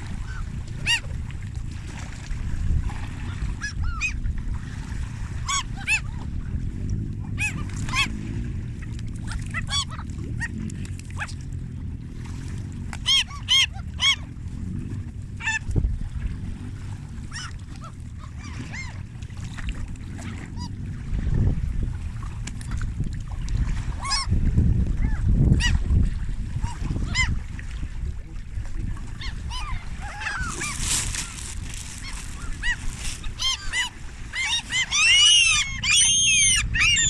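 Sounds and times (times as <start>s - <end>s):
steady low rumble: 0.0s - 37.0s
geese honking: 13.0s - 14.3s, 29.2s - 30.8s, 32.0s - 37.0s.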